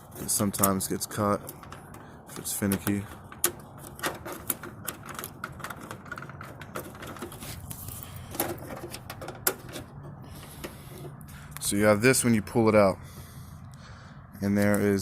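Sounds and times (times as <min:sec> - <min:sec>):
plastic clicks and rattles: 0:00.5 - 0:11.2.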